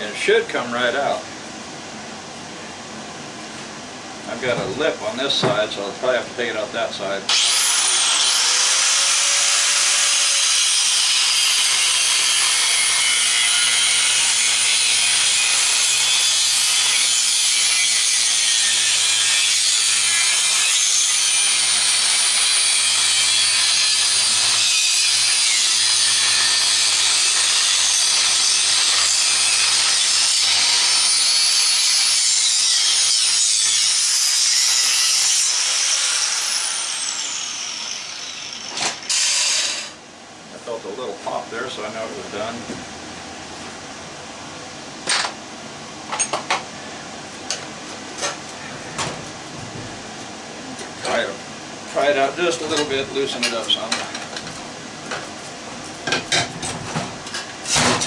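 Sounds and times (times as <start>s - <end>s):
angle grinder cutting metal: 7.3s - 40.0s.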